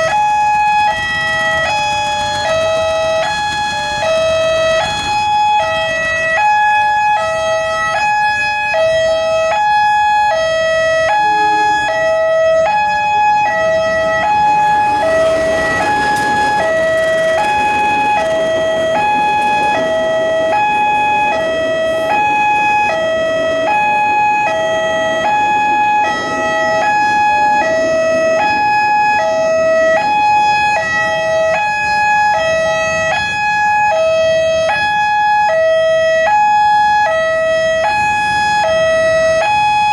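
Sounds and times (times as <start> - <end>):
level crossing two-tone alarm: 0.0 - 39.9
rush of broad noise: 10.5 - 29.9.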